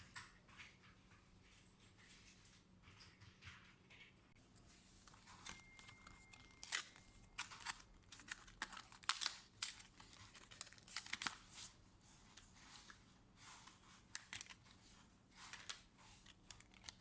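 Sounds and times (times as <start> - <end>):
plastic packaging crinkling and tearing: 5.0 - 11.8, 13.6 - 17.0.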